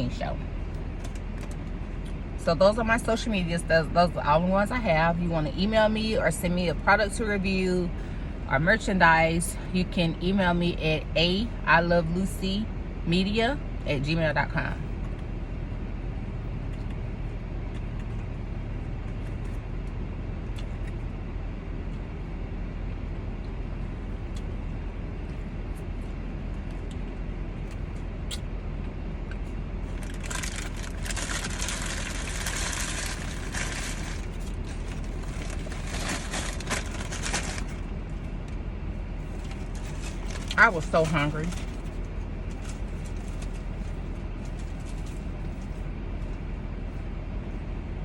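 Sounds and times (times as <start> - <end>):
car engine rumble inside cabin: 0.0 - 48.0
crackly rustling: 29.3 - 46.4.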